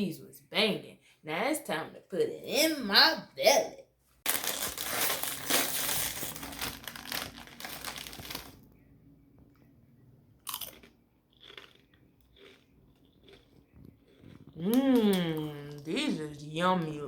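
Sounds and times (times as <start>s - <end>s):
person crunching tortilla chips: 4.2s - 8.6s, 10.4s - 15.1s.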